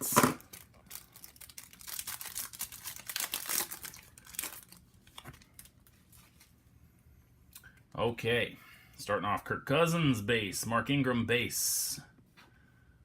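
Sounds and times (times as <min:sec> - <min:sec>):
plastic wrapper crinkling and tearing: 0:00.4 - 0:06.6.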